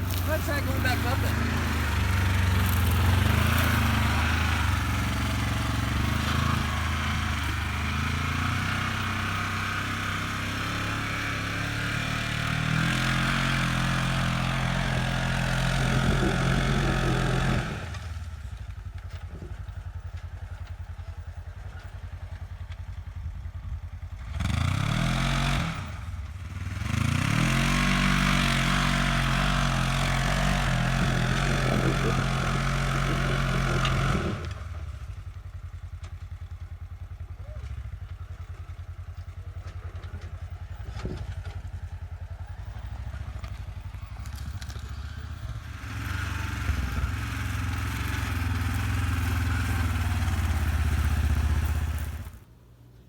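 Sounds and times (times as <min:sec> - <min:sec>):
terrain noise: 0:00.0 - 0:08.4, 0:42.3 - 0:52.5
utility vehicle engine: 0:00.0 - 0:53.0
wind: 0:00.0 - 0:53.0.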